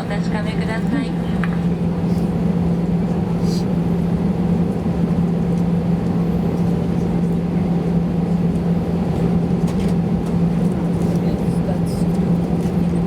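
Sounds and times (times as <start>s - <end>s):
cabin air hum: 0.0s - 7.0s
jet engines droning: 0.0s - 13.0s.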